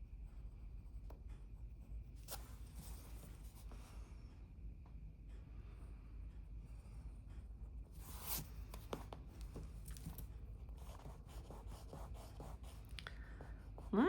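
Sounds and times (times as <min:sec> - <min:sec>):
pencil sketching on paper: 0:00.2 - 0:03.7, 0:08.0 - 0:09.2, 0:10.7 - 0:14.0.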